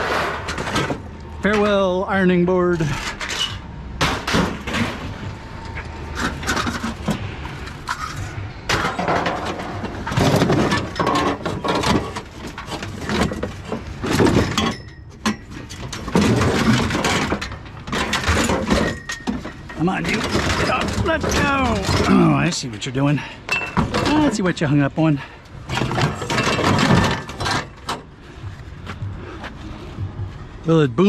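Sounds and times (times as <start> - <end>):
scrap metal clattering onto pile: 0.0 - 1.7, 7.9 - 22.5, 25.7 - 28.0.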